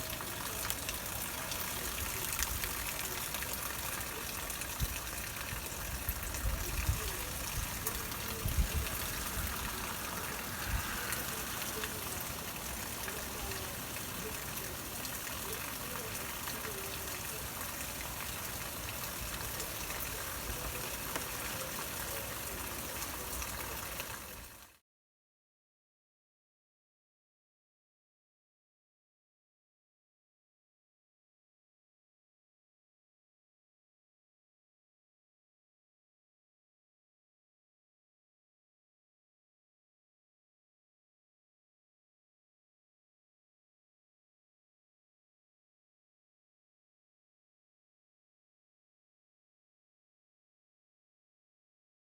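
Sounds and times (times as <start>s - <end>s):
heavy rain pouring: 0.0s - 24.6s
wind buffeting microphone: 5.8s - 12.0s.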